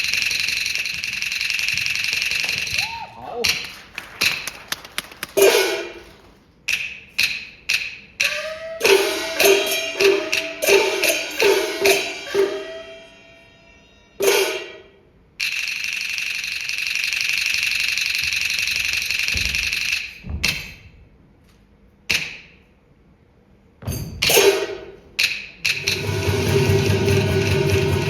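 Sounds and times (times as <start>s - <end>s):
small gong strokes: 8.4s - 15.0s, 25.8s - 28.0s.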